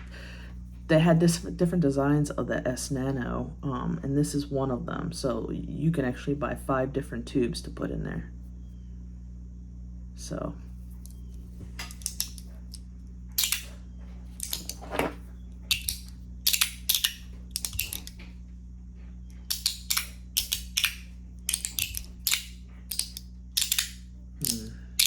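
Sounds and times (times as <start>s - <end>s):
fidget slider clicking: 15.7s - 18.2s, 19.4s - 25.0s.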